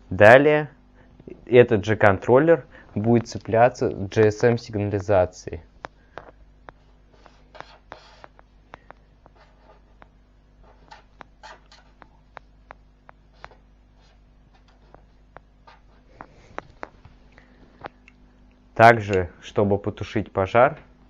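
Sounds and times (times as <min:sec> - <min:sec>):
scratchy writing strokes: 0:06.7 - 0:17.0.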